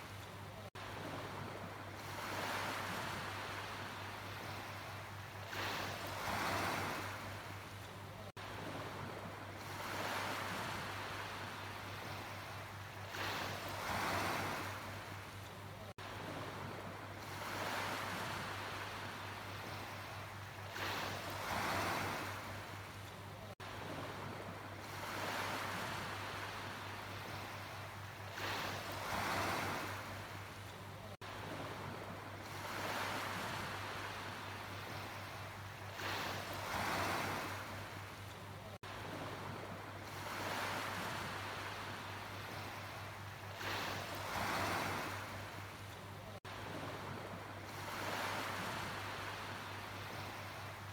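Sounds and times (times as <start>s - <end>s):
sea waves washing in: 23.5s - 50.9s.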